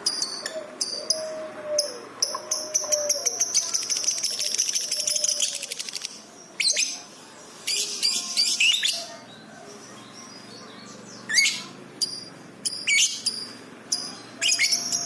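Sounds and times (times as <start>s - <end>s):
lovebird rattling trill: 0.0s - 6.2s.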